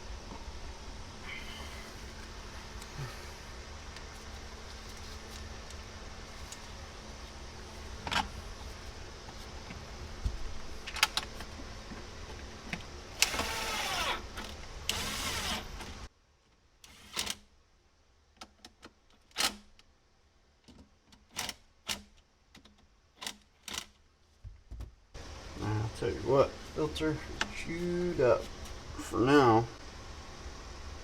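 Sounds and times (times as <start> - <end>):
background hum and hiss: 0.0 - 31.0
scraping and rustling: 4.0 - 12.5.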